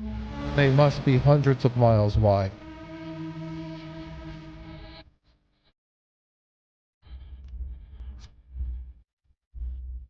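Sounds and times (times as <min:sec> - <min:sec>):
background music: 0:00.0 - 0:05.0.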